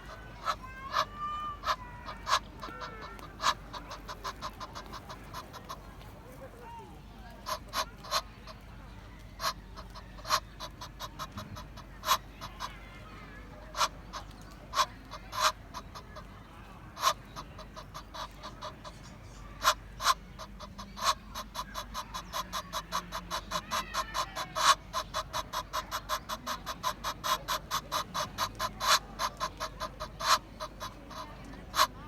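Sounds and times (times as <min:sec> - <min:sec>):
goose honking: 0:00.0 - 0:06.1, 0:07.4 - 0:08.6, 0:19.6 - 0:32.0.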